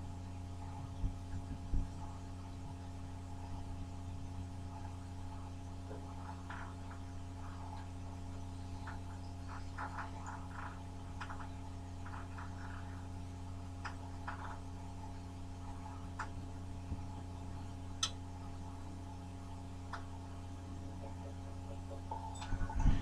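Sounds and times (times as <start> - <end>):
low electrical hum: 0.0 - 23.0
faint clicks and taps: 8.8 - 13.0, 13.8 - 14.6, 16.1 - 17.1.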